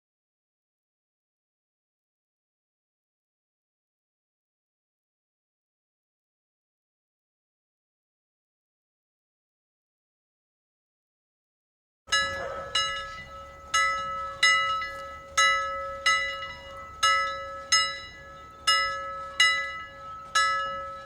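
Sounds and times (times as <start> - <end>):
timer alarm bell ringing: 12.1 - 21.0.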